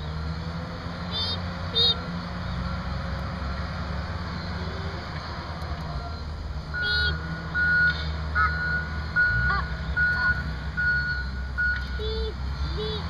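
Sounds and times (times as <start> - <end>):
diesel engine rumble: 0.0 - 13.0
truck backup alarm beeping: 6.0 - 13.0.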